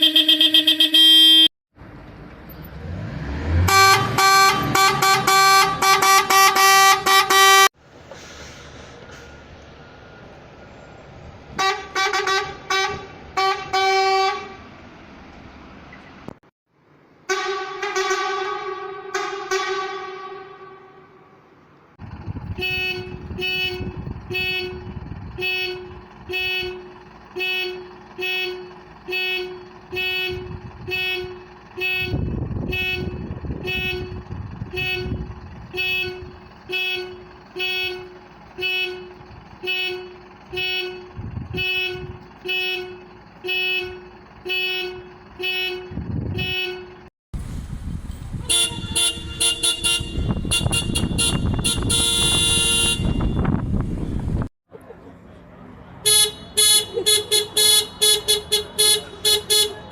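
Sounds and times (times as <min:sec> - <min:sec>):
brighter higher horn tooting: 0:00.0 - 0:01.5, 0:03.6 - 0:07.7, 0:11.6 - 0:14.7, 0:17.3 - 0:21.2, 0:22.4 - 0:47.1, 0:48.3 - 0:53.8, 0:56.0 - 0:59.9
bus horn short toots: 0:00.0 - 0:01.5, 0:03.6 - 0:07.7, 0:11.6 - 0:14.7, 0:17.3 - 0:21.1, 0:22.4 - 0:47.1, 0:48.3 - 0:53.7, 0:56.0 - 0:59.9.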